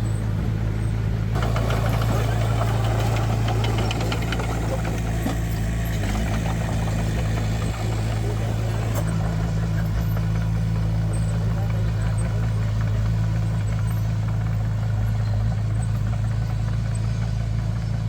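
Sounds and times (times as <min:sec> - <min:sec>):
diesel machine engine running: 0:00.0 - 0:18.0
metallic clanks and rattles: 0:01.4 - 0:10.2.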